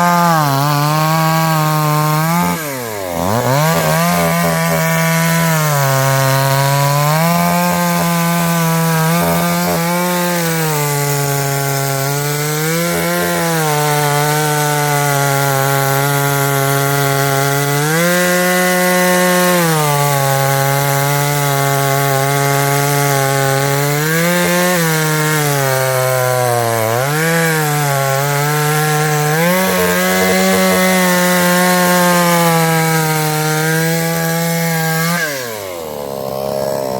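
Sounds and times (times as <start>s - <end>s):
chainsaw running: 0.0s - 36.9s.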